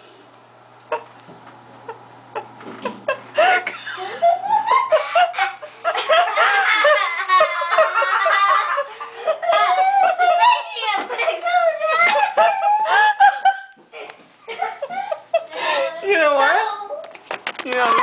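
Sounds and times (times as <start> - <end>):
people laughing hard: 1.9 - 15.9.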